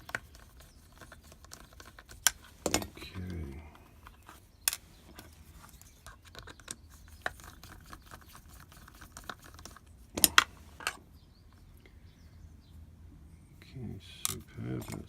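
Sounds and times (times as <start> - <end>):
screwdriver scratching on lock: 0.0 - 3.0.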